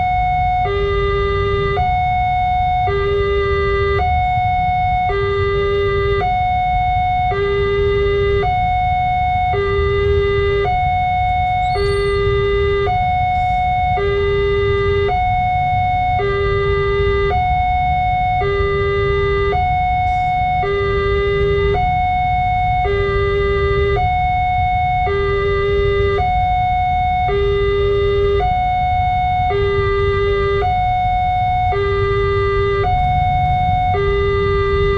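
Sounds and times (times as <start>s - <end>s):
two-tone warning siren: 0.0s - 34.9s
steady low rumble: 30.9s - 34.9s.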